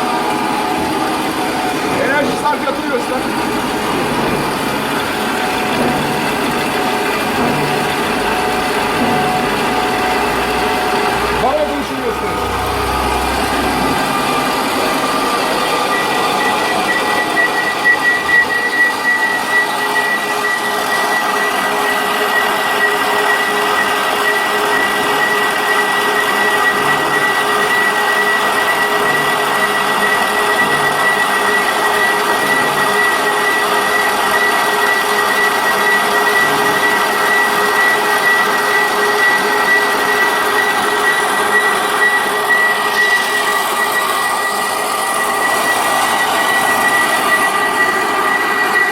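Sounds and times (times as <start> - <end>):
boring machine motor whining: 0.0 - 48.9.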